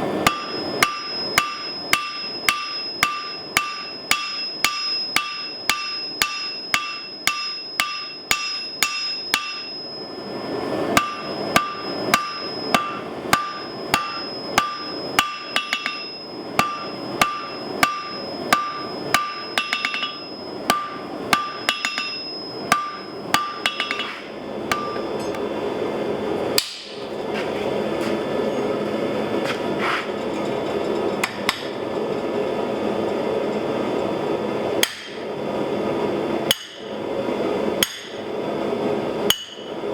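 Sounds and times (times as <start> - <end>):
hammer striking anvil: 0.2 - 10.0, 11.0 - 25.4, 26.6 - 27.0, 34.8 - 35.2, 36.5 - 36.9, 37.8 - 38.2, 39.3 - 39.8.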